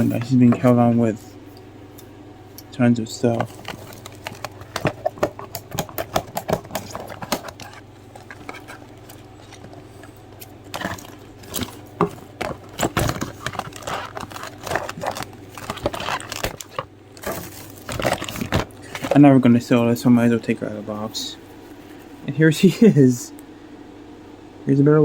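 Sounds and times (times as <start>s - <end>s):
packaging clicks and rustles: 3.3s - 19.2s.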